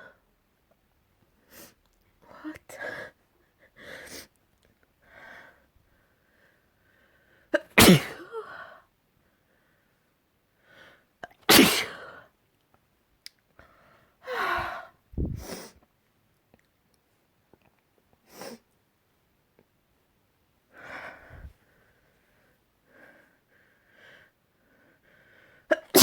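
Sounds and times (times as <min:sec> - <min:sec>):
person sneezing: 0:07.6 - 0:08.3, 0:11.5 - 0:12.1, 0:25.7 - 0:26.0.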